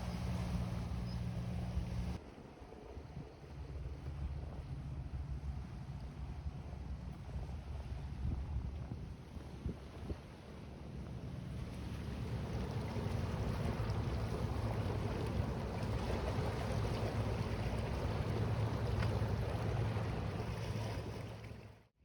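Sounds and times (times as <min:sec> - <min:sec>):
ship engine drone: 0:00.0 - 0:02.2, 0:10.6 - 0:21.6
waves: 0:00.0 - 0:21.9
wind: 0:00.0 - 0:22.0.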